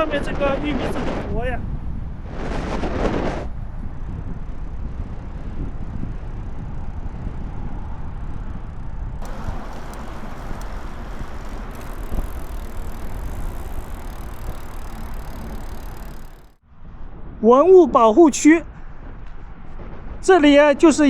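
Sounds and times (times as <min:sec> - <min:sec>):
wind rumbling on microphone: 0:00.0 - 0:21.0
road noise hiss: 0:08.7 - 0:16.6.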